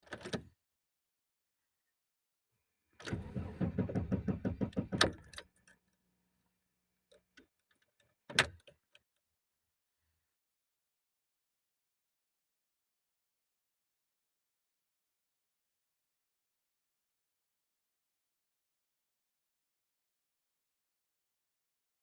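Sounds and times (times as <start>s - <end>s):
car engine cranking: 3.0s - 5.3s.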